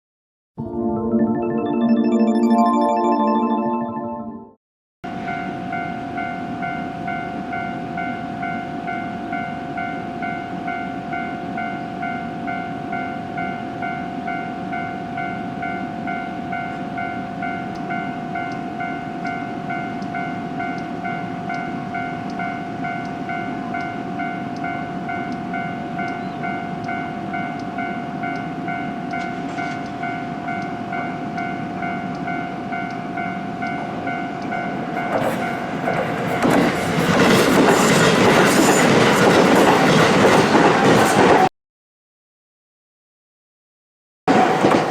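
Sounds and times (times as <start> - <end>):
level crossing warning bell: 5.2 - 35.7
electric train passing: 15.4 - 41.4
train wheels clattering on rails: 34.4 - 41.5, 44.3 - 44.9.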